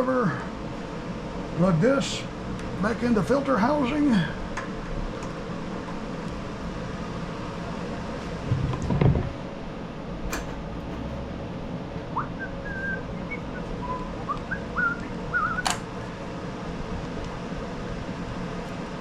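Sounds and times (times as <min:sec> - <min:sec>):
machinery hum: 0:00.0 - 0:19.0
sharp clicks of engine parts: 0:10.2 - 0:11.5
warbling whistled chirps: 0:12.1 - 0:15.7.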